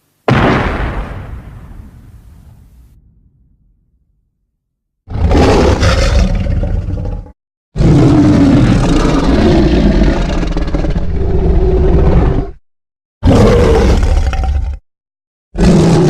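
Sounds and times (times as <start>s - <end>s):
monster roar: 5.1s - 12.6s, 13.2s - 14.8s, 15.6s - 16.0s.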